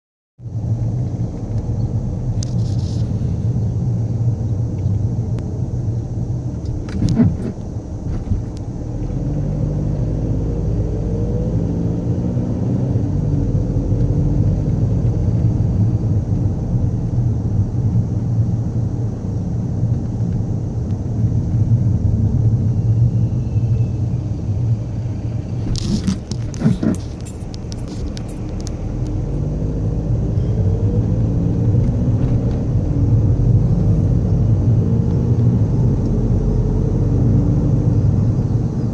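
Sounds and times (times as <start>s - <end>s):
car driving with low rumble: 0.4s - 38.9s.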